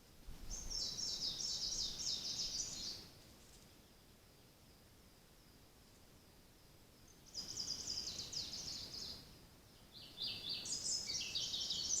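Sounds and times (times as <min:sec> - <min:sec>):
songbird trilling: 0:07.3 - 0:09.2, 0:10.0 - 0:12.0.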